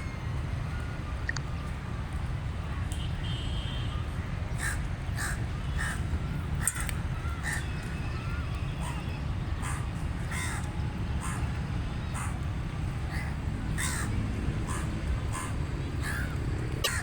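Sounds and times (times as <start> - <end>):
crow cawing: 9.6 - 10.6, 13.1 - 14.1, 14.7 - 17.0.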